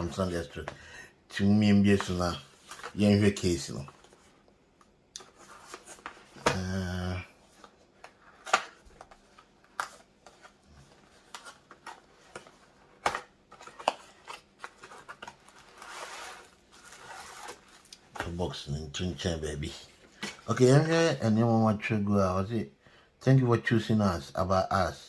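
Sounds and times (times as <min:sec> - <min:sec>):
packaging rustling: 0:05.2 - 0:18.6.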